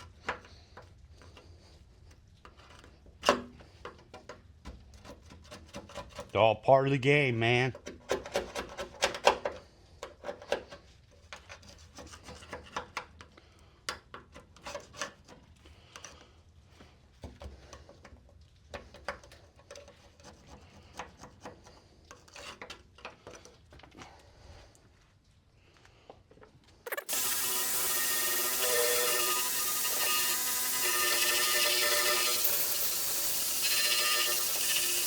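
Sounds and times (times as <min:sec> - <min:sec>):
hand tools scraping on metal: 0:26.9 - 0:35.0.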